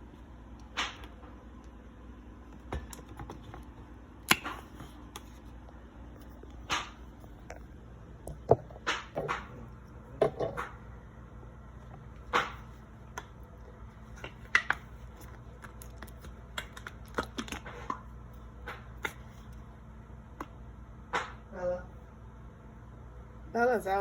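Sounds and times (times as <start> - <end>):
food preparation clicks and knocks: 2.5 - 7.6, 8.2 - 10.9, 11.8 - 19.6.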